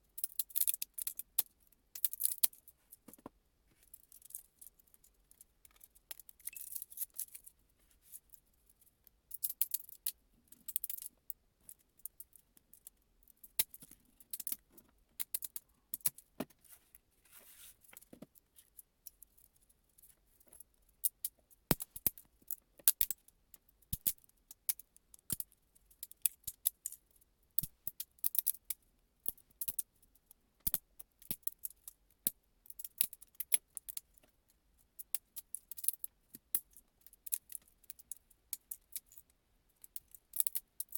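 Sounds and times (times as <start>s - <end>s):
small hard objects clicking and clattering: 0.2s - 16.6s, 17.8s - 30.0s, 30.6s - 34.4s, 35.0s - 40.9s.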